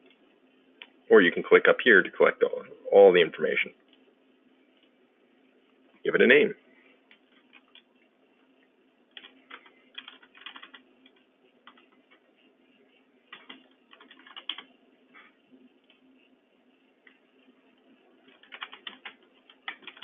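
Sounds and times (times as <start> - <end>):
computer keyboard typing: 7.5 - 7.9, 9.1 - 12.2, 13.3 - 14.7, 18.2 - 20.0.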